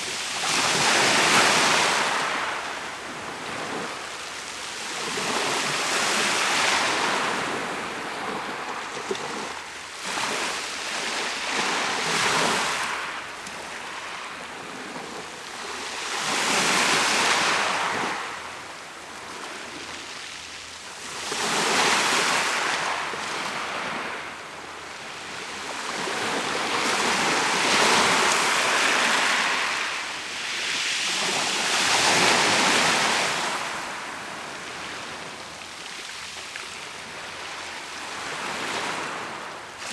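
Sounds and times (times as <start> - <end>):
sea waves breaking on shore: 24.9 - 35.6.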